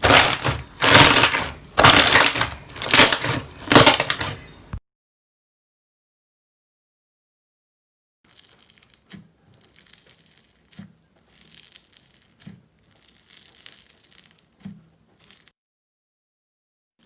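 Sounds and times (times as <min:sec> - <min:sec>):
slime crackling and popping: 0:00.0 - 0:04.4, 0:08.3 - 0:15.5.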